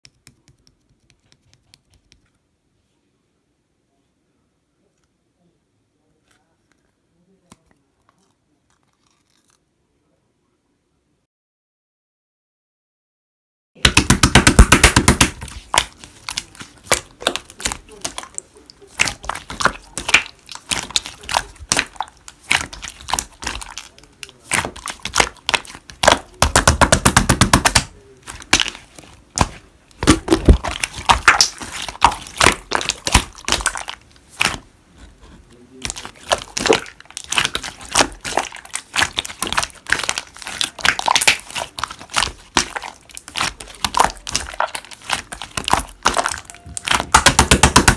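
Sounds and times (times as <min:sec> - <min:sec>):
slime crackling pops: 0:13.8 - 0:34.7, 0:35.8 - 0:47.9.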